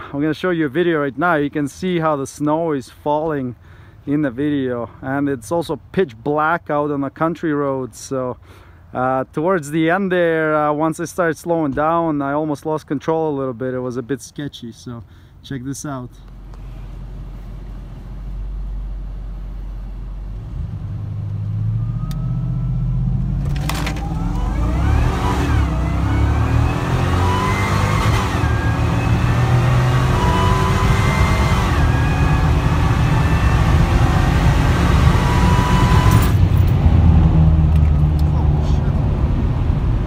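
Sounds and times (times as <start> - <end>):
truck engine at full throttle: 20.0 - 40.0.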